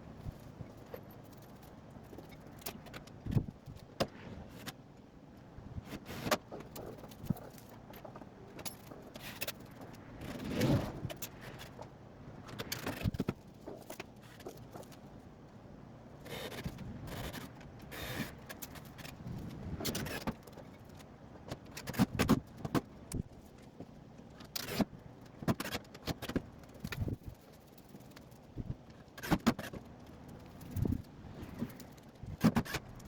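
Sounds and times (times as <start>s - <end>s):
metal clinks and rattles: 0.2s - 3.8s, 6.7s - 10.3s.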